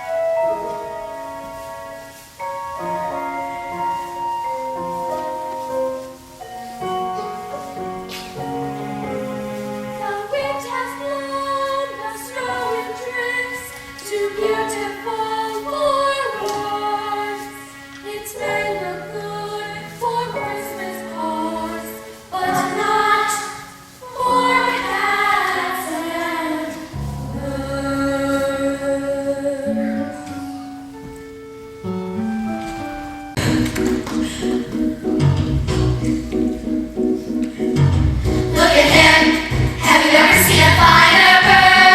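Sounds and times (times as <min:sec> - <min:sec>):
instrumental accompaniment: 0:00.0 - 0:41.9
chorus singing: 0:07.6 - 0:30.7, 0:33.3 - 0:41.9.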